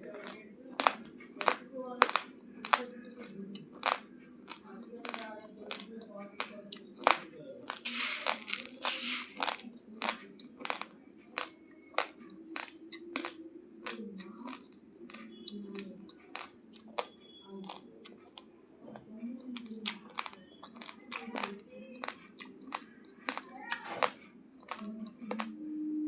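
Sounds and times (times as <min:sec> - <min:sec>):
rice crunching between teeth: 0:07.9 - 0:09.6.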